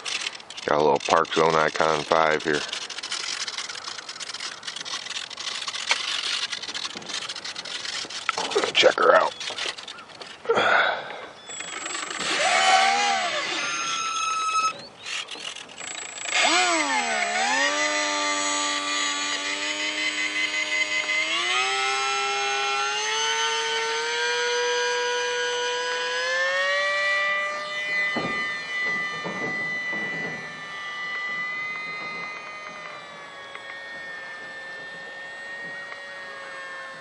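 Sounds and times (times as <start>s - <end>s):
toy plane electric motor whining: 0.0s - 37.0s.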